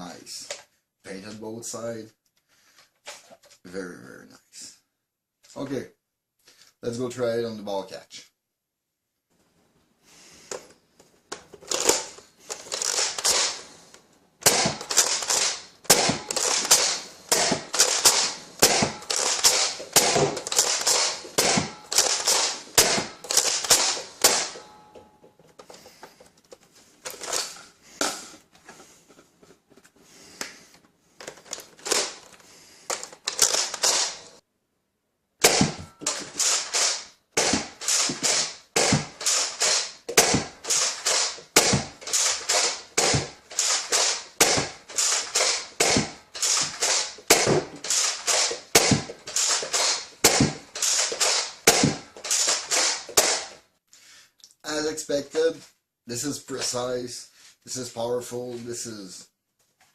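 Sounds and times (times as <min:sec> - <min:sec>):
toy blaster priming and firing: 0:11.7 - 0:13.6, 0:14.4 - 0:24.6, 0:32.9 - 0:34.3, 0:35.5 - 0:53.6.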